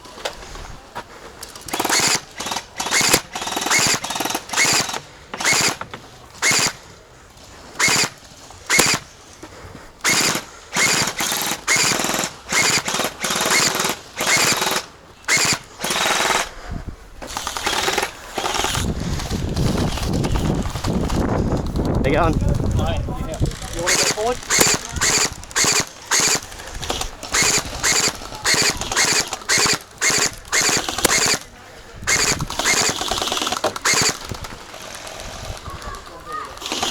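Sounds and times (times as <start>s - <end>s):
gel blaster firing bursts: 1.7s - 5.8s, 6.4s - 6.8s, 7.8s - 9.1s, 10.0s - 16.5s, 17.3s - 21.2s, 23.4s - 35.8s, 36.6s - 36.9s.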